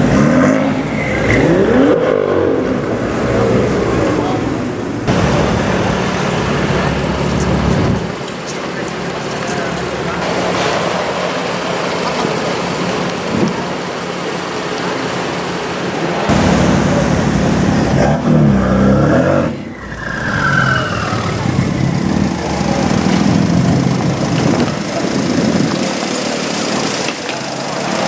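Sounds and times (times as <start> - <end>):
car engine revving: 5.0 - 8.4, 16.3 - 26.7.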